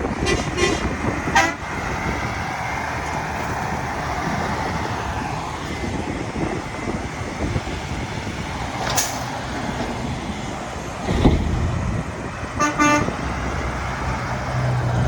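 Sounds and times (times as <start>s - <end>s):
traffic rumble: 0.0s - 15.0s
vehicle horn toot: 0.2s - 1.6s, 12.6s - 13.2s.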